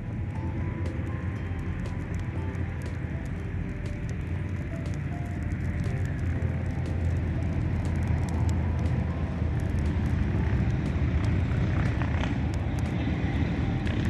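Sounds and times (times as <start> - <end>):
campfire crackling and popping: 0.0 - 14.0
steady low rumble: 0.0 - 14.0.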